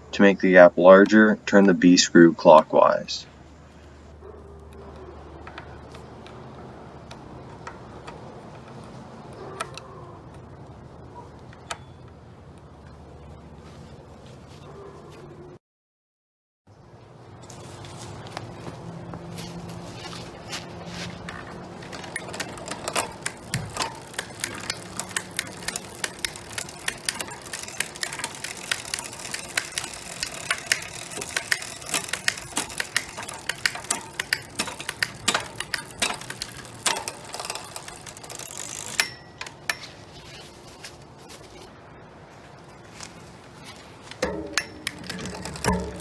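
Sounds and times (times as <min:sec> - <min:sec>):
bicycle chain clicking: 0:19.5 - 0:41.7, 0:44.0 - 0:46.0.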